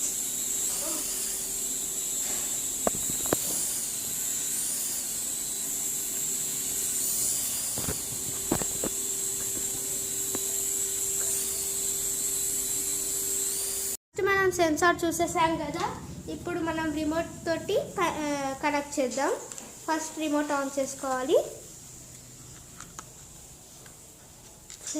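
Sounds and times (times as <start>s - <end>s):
toy helicopter rotors whirring: 0.0s - 14.0s.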